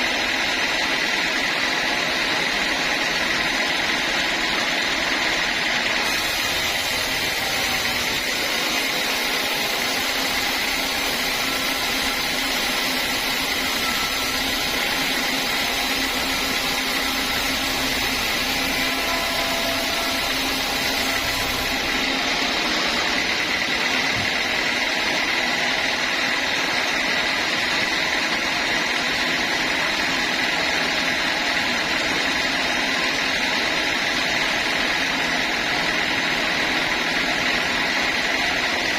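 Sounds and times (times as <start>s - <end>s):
sawmill machinery sawing timber: 0.0s - 38.9s.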